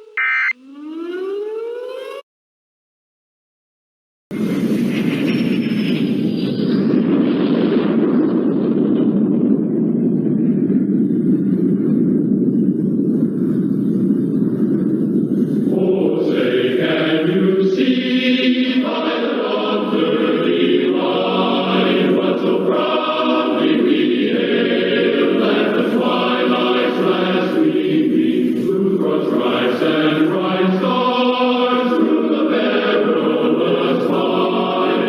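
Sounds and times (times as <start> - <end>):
choir singing an anthem: 15.7 - 35.0.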